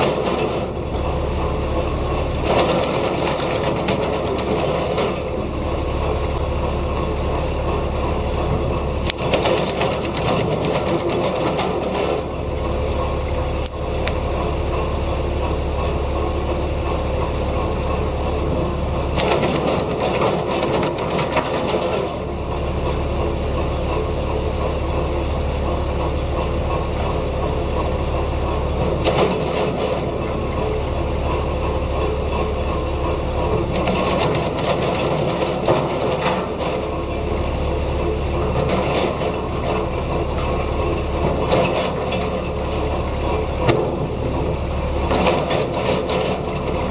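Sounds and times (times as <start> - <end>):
wood chipper clattering: 0.0 - 46.9
wood chipper running: 0.0 - 46.9.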